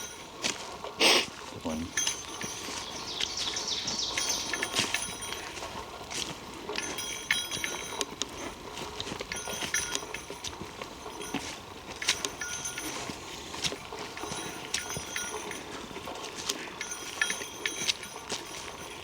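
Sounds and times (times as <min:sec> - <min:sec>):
footsteps crunching on leaves and twigs: 0:00.0 - 0:19.0
faint high steady tones: 0:01.8 - 0:05.8, 0:09.2 - 0:19.0.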